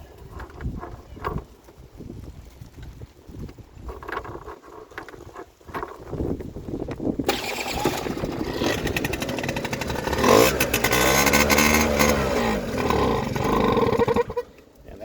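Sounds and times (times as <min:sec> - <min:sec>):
two-stroke scooter engine revving: 0:07.2 - 0:14.7.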